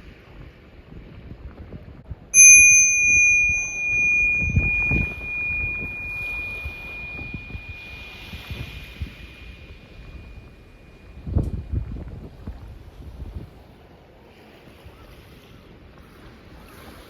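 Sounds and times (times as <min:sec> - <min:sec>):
small bell ringing: 0:02.4 - 0:09.0.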